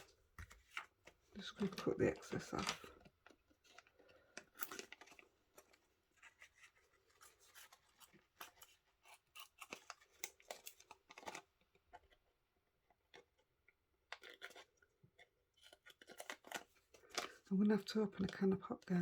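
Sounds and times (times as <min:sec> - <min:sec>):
scissors snipping plastic: 0:07.5 - 0:11.5.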